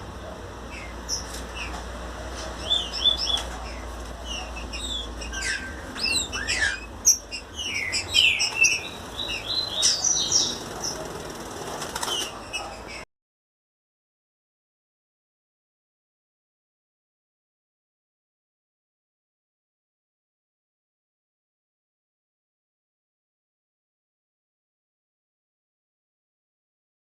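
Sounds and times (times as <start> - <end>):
birds singing whistled phrases: 2.6 - 11.1.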